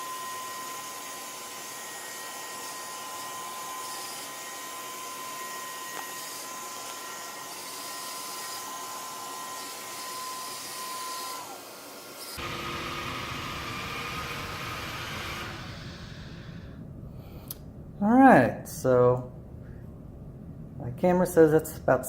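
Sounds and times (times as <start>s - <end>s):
robot vacuum motor whine: 0.0s - 16.8s
suction hiss: 14.4s - 16.8s
low rumbling hum: 15.6s - 22.0s.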